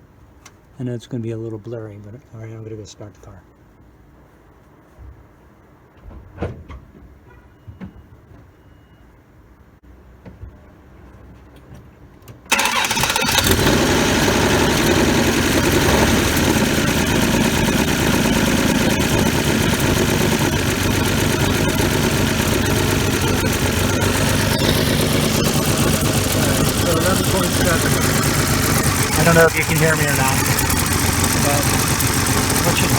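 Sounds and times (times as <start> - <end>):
car engine starting and idling: 12.5 - 32.9.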